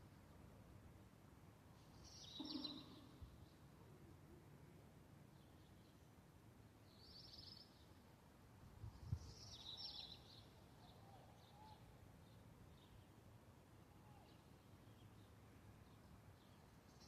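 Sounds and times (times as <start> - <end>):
faint bird trills: 2.1 - 3.2.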